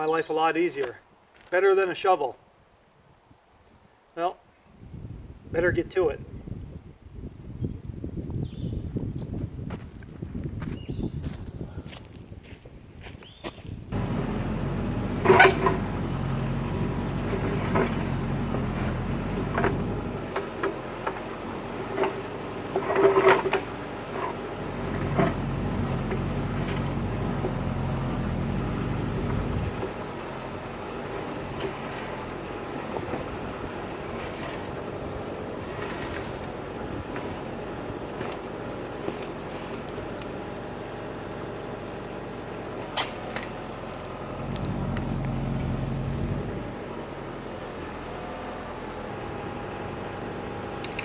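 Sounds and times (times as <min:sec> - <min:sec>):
backhoe engine running: 0:13.9 - 0:51.0
metal clanks and knocks: 0:14.0 - 0:27.5.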